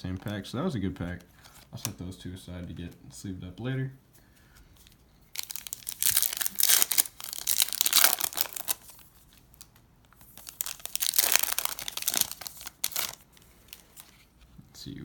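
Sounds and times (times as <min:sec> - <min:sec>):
foil wrapper tearing and crinkling: 0:05.3 - 0:14.2.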